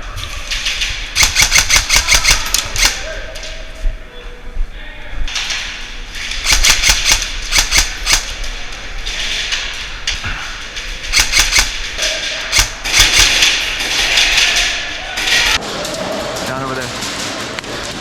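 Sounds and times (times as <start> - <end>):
airsoft guns firing: 1.1 - 3.1, 6.3 - 8.4, 11.1 - 15.6.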